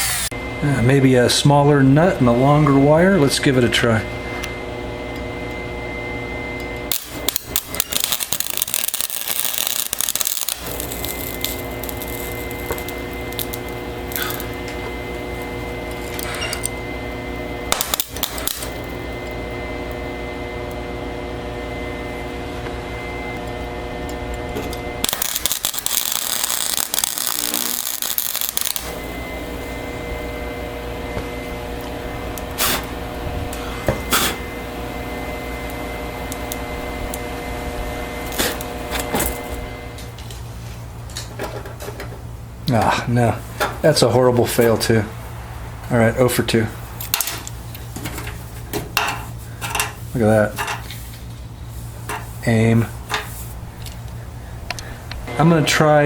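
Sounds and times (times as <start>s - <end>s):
welder arc crackling and sizzling: 0.0s - 0.3s, 5.7s - 21.0s, 23.3s - 40.4s
steady machine hum: 0.0s - 56.0s.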